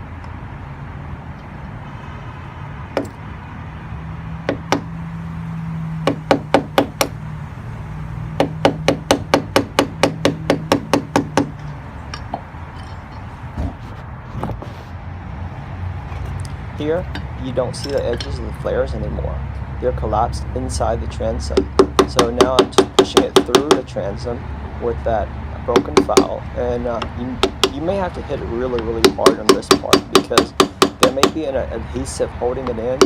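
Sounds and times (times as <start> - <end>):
hammer striking metal punch: 21.5 - 23.8, 28.7 - 31.4.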